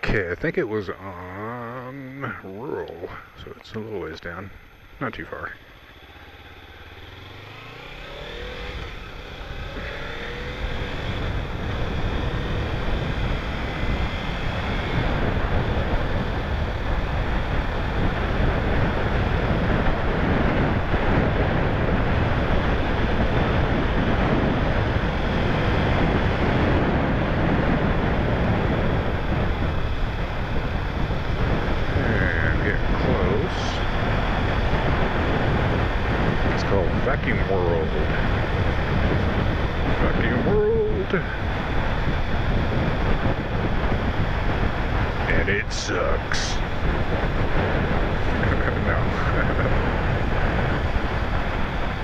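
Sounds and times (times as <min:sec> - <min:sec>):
motorcycle accelerating: 0:00.0 - 0:52.0
wind rushing over microphone: 0:00.0 - 0:52.0.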